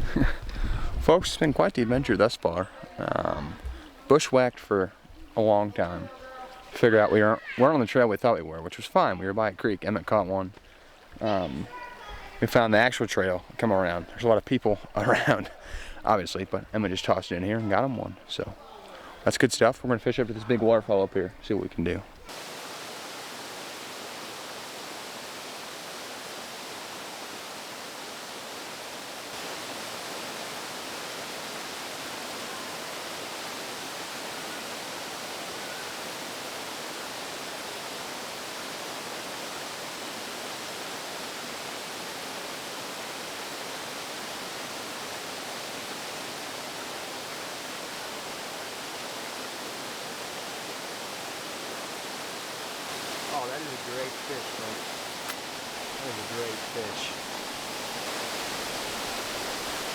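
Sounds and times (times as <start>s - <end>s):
waterfall rushing: 0.0s - 4.8s, 22.2s - 59.9s.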